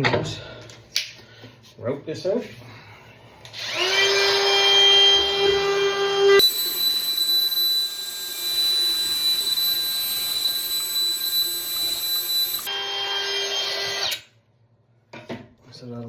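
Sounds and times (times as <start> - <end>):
router motor whining: 3.6 - 14.2.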